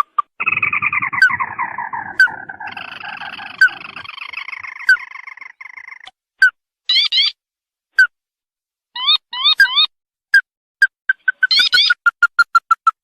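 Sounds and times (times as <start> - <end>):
chattering bird trill: 0.0 - 6.1, 11.1 - 13.0
rattling bird trill: 0.4 - 6.1, 11.1 - 12.6.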